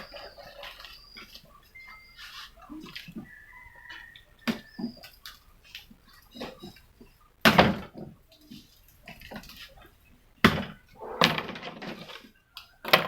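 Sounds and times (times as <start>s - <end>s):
loud scraping noises: 10.7s - 12.3s.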